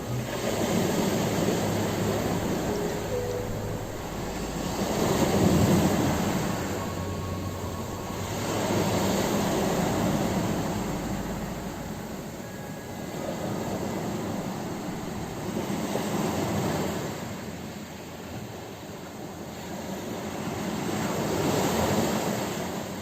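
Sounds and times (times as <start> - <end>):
ocean waves breaking on shore: 0.0 - 16.8.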